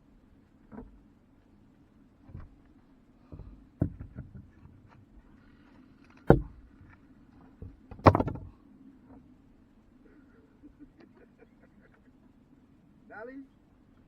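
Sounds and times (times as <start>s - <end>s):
faint low hum: 0.0s - 14.0s
hard objects knocking: 3.3s - 4.5s, 7.9s - 8.5s.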